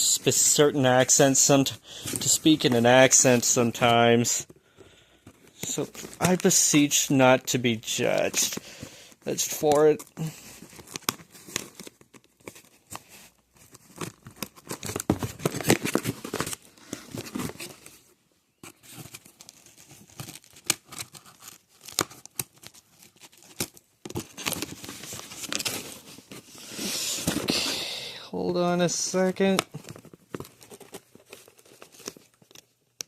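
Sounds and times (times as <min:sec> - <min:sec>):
packaging ripping and rustling: 0:09.4 - 0:18.1, 0:18.7 - 0:27.6, 0:29.4 - 0:32.7.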